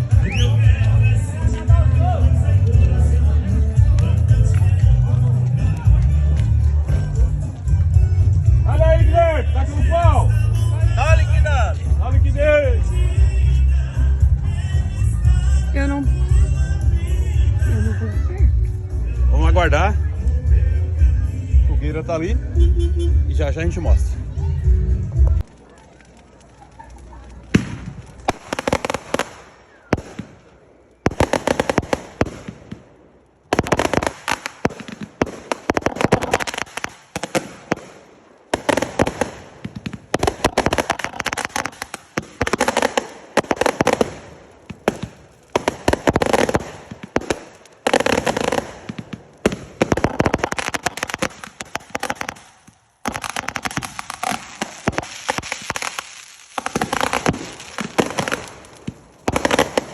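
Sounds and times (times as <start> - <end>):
firecrackers crackling: 0.0 - 59.9.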